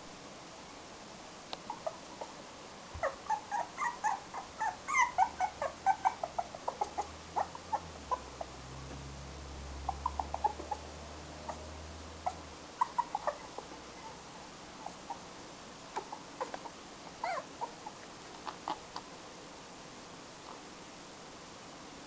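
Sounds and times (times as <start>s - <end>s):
puppy whimpering and yipping: 1.7s - 2.3s, 3.0s - 8.5s, 9.8s - 14.2s, 16.0s - 18.0s.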